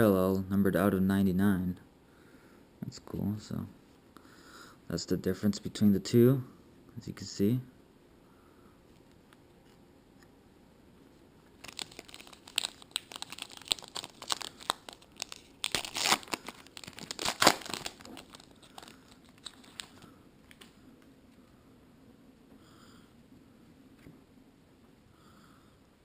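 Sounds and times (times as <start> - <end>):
wrapper tearing and crinkling: 11.6 - 20.6.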